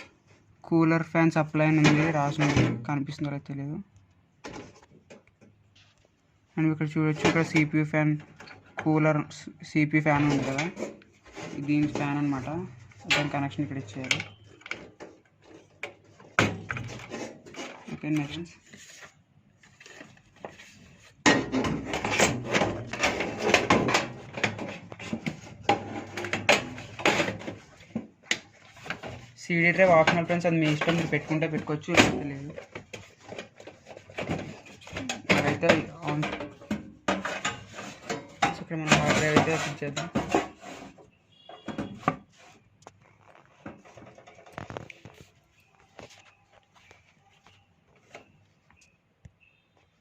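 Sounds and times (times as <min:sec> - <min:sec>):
computer hardware knocks and scrapes: 0:10.0 - 0:19.0, 0:19.7 - 0:45.3.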